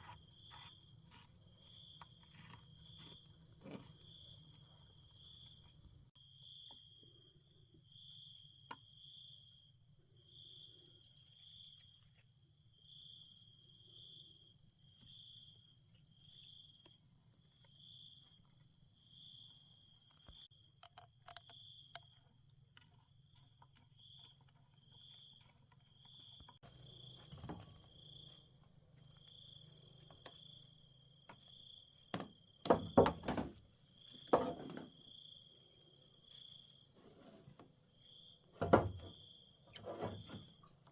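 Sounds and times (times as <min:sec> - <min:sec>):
sharp knocks and clatter: 0:32.1 - 0:33.6, 0:34.2 - 0:34.9, 0:38.6 - 0:39.1.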